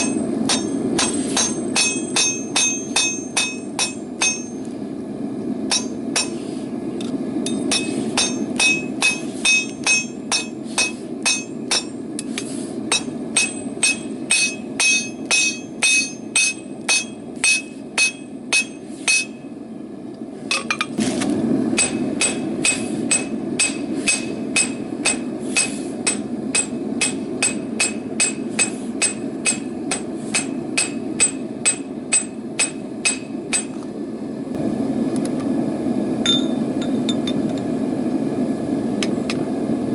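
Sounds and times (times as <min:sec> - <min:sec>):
hammer ringing on anvil: 0:00.0 - 0:04.7, 0:05.7 - 0:06.4, 0:07.5 - 0:12.0, 0:12.9 - 0:19.4, 0:21.8 - 0:33.7, 0:36.2 - 0:37.3.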